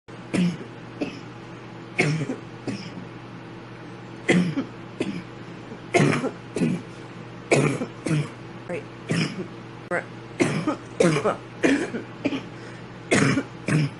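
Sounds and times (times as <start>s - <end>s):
woman coughing harshly: 0.3s - 1.3s, 2.0s - 3.0s, 4.3s - 5.3s, 5.9s - 6.9s, 7.5s - 8.4s, 9.1s - 9.5s, 10.4s - 12.5s, 13.1s - 13.9s.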